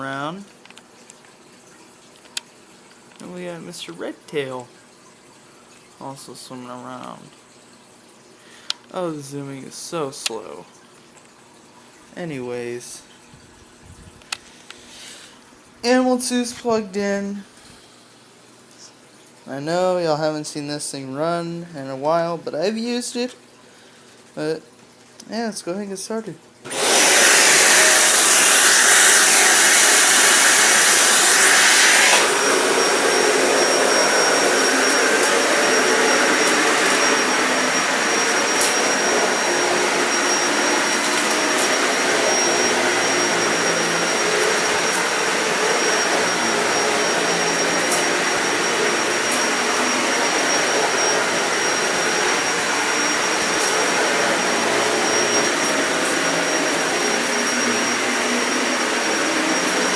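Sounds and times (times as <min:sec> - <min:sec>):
vacuum cleaner running: 0:26.7 - 0:59.9.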